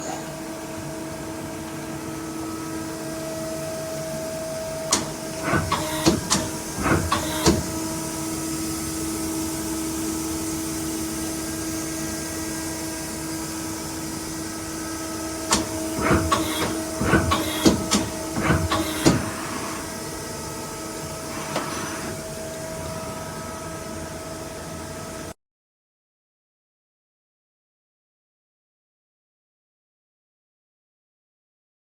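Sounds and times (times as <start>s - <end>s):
mechanical clanks and clicks: 4.9s - 7.9s, 15.4s - 19.9s.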